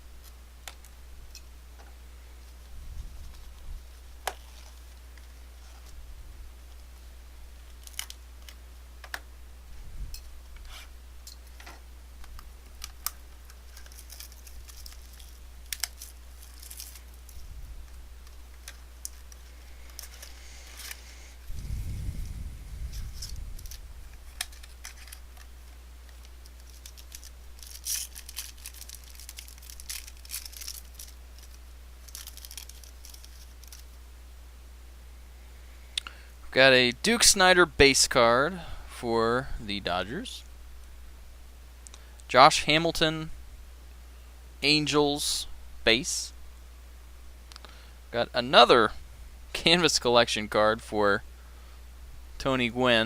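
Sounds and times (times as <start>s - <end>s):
low electrical hum: 0.0s - 53.0s
packaging tearing and crinkling: 12.7s - 17.4s, 22.9s - 33.9s
dull low rumble: 21.4s - 24.2s.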